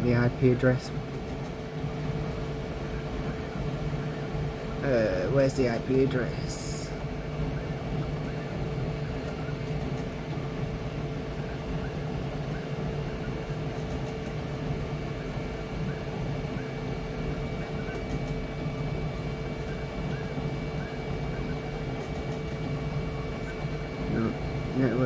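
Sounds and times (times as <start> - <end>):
motor and fan hum: 0.0 - 25.0.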